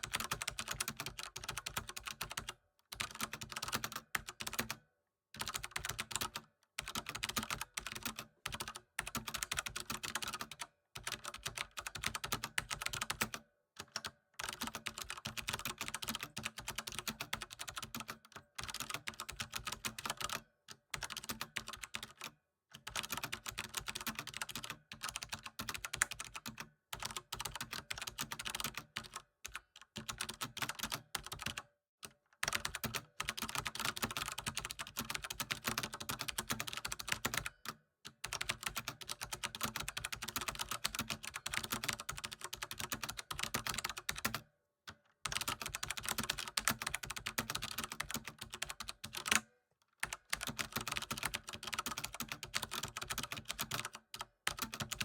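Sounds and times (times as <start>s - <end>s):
keyboard typing: 0.0s - 4.8s, 5.4s - 20.4s, 22.9s - 29.2s, 29.9s - 31.6s, 32.4s - 44.4s, 45.2s - 49.4s, 50.0s - 55.0s.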